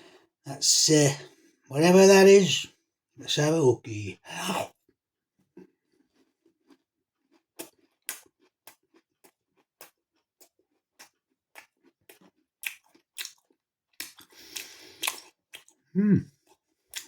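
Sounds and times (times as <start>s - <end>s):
chewing crisp pastry: 4.3s - 17.0s.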